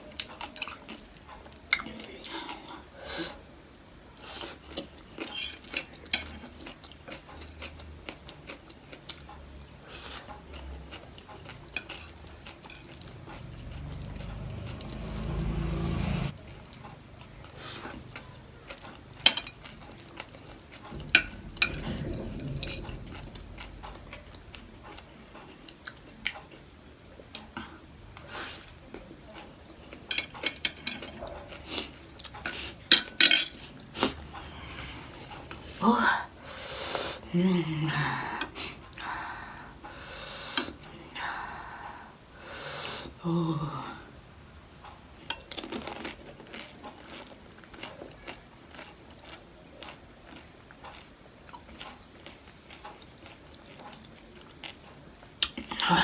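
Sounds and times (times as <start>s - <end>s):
chewing and crunching: 0.0s - 2.8s, 3.8s - 15.6s, 16.4s - 32.8s, 44.8s - 55.9s
low rushing sound: 13.1s - 16.3s, 20.9s - 25.3s.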